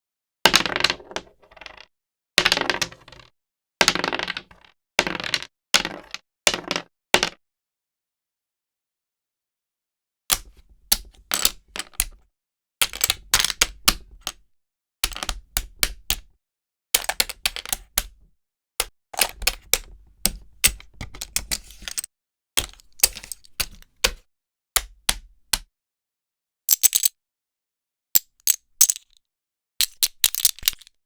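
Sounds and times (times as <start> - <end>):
tiles clicking together: 26.7 - 27.1.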